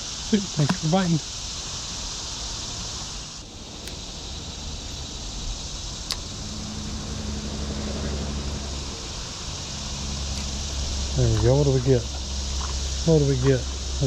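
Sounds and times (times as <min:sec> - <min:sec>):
high insect drone: 0:00.0 - 0:14.0
motor humming: 0:02.6 - 0:14.0
sharp click: 0:03.7 - 0:05.2.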